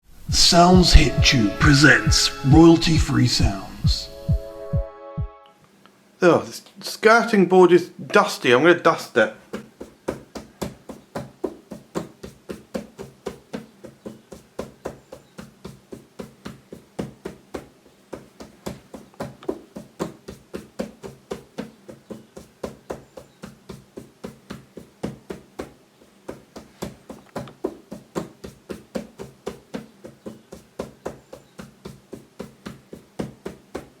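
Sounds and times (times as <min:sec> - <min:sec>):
rapid tapping on wooden board: 0:09.5 - 0:34.0.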